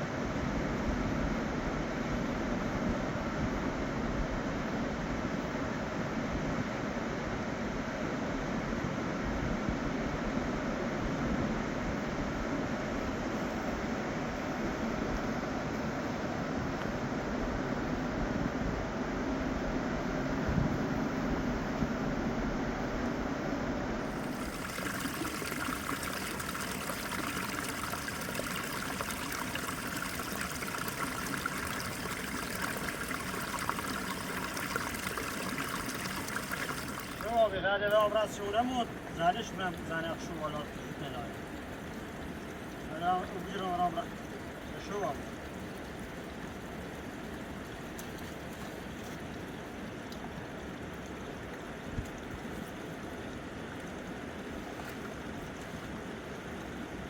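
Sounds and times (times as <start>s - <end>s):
river flowing: 24.1s - 51.8s.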